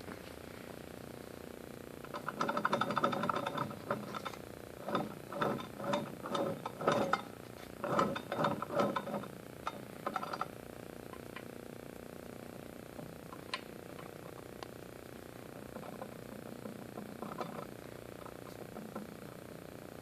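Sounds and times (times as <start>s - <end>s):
motor grinding rattle: 1.8s - 11.6s, 15.4s - 19.6s.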